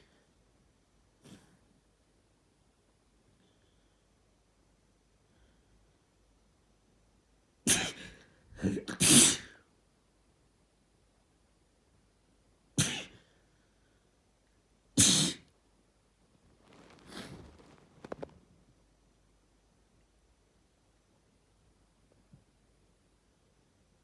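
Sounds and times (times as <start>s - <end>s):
person sneezing: 15.0s - 15.4s
person sniffing: 16.8s - 18.2s.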